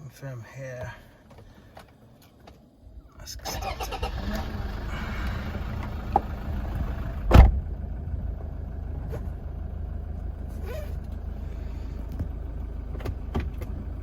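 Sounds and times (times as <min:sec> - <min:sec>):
diesel engine idling: 0:03.2 - 0:14.0
loud thump: 0:07.3 - 0:07.6.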